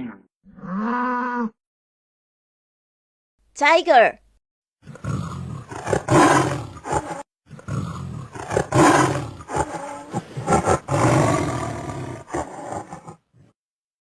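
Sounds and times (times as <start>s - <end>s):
tiger roaring and growling: 4.8s - 13.6s.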